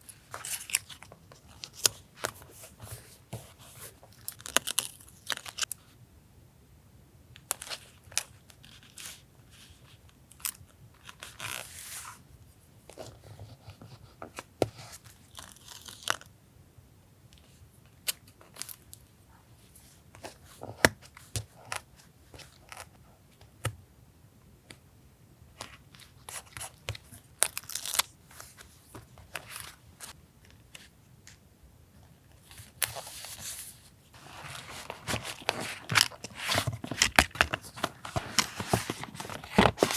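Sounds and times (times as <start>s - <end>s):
paper rustling and tearing: 34.2s - 39.9s.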